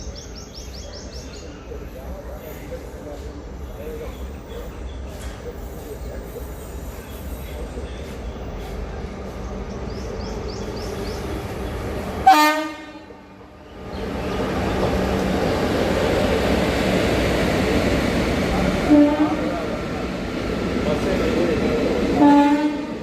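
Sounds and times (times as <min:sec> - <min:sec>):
moving train noise: 0:00.0 - 0:23.0
train horn blast: 0:12.2 - 0:13.3, 0:18.8 - 0:19.6, 0:22.2 - 0:23.0.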